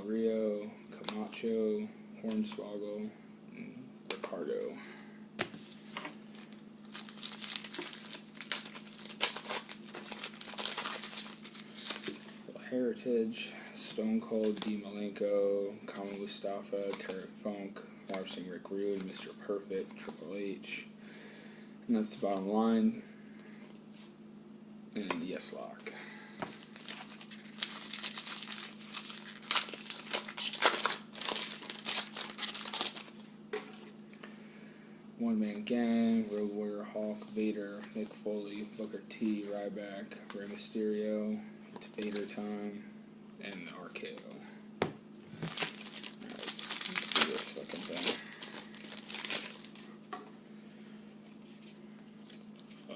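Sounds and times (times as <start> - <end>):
plastic wrapper crinkling: 6.3 - 12.4, 26.5 - 33.2, 45.4 - 49.9.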